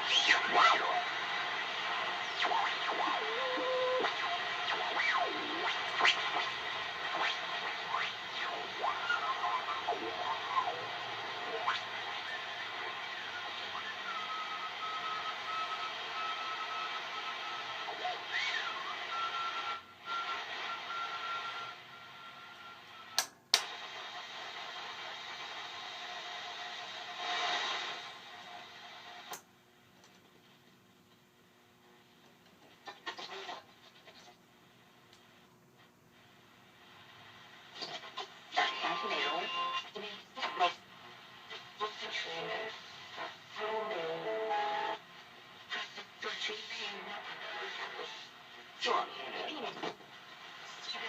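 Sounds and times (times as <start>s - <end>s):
radio tuning whistles: 0.0s - 23.2s
radio static hiss: 0.0s - 29.5s, 30.2s - 51.0s
faint steady whistle: 13.1s - 23.2s.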